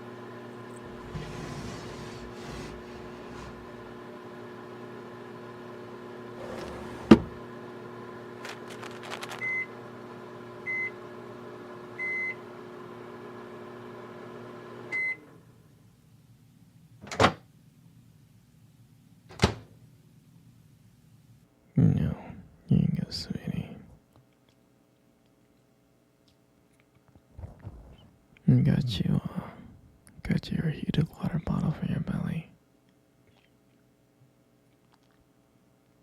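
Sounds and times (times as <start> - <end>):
microwave oven humming: 0.0 - 24.1.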